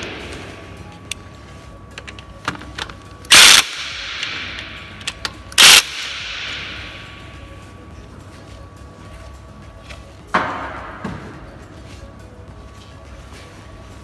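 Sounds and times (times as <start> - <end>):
impact wrench bursts: 3.3 - 7.2.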